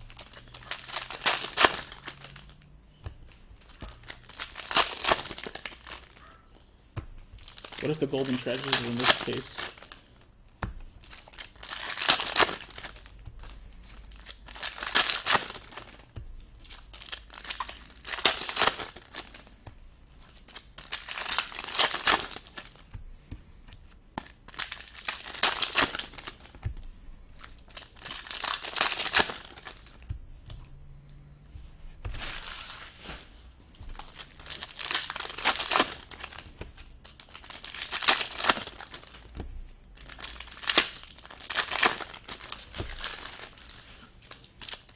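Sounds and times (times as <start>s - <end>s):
foil packs tearing and crinkling: 0.0s - 2.7s, 3.8s - 6.3s, 7.4s - 10.2s, 11.0s - 19.6s, 20.2s - 22.9s, 24.2s - 26.6s, 27.4s - 30.0s, 32.1s - 33.3s, 33.9s - 39.3s, 40.0s - 44.9s.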